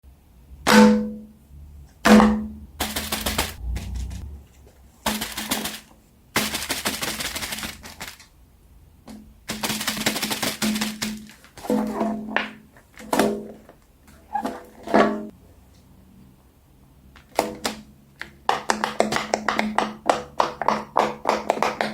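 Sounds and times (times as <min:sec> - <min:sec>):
rapid dense clicking: 0:02.8 - 0:04.2, 0:05.1 - 0:08.3, 0:09.5 - 0:11.4.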